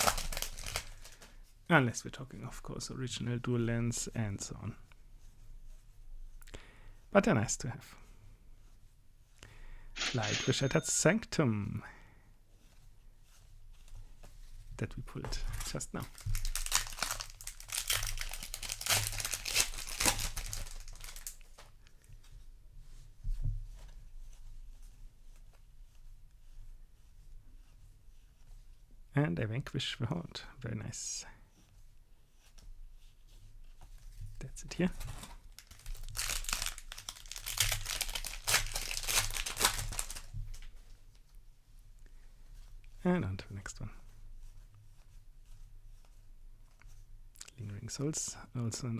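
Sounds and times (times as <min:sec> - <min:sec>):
foil wrapper crinkling: 0:00.0 - 0:01.3, 0:15.5 - 0:21.5, 0:35.0 - 0:40.7.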